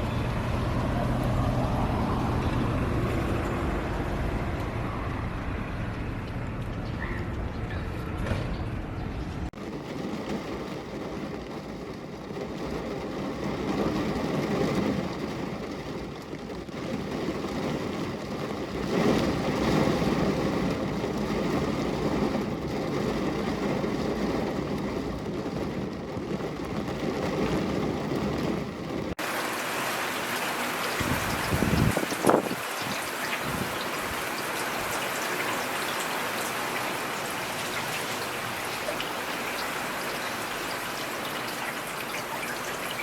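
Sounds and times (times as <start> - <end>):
rushing water: 29.0 - 43.0
hissy water sound: 29.2 - 43.0.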